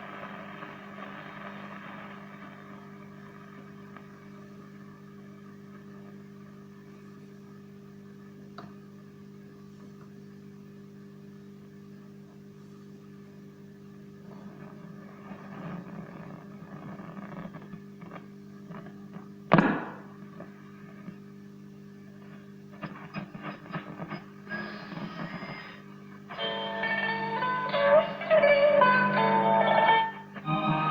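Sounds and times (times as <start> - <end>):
radio static crackling: 0.0 - 8.4, 11.6 - 30.9
radio hum and hiss: 0.0 - 30.9
sharp loud crack: 19.5 - 20.2.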